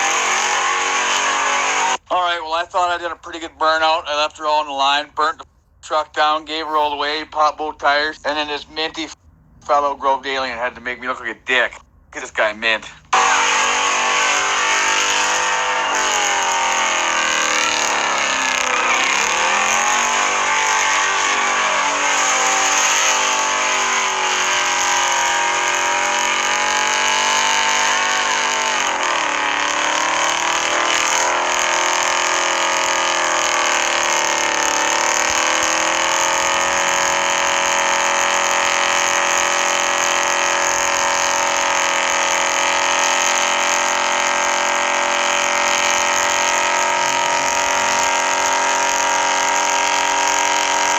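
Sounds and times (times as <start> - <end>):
truck engine revving hard: 0.0 - 2.0, 13.0 - 50.9.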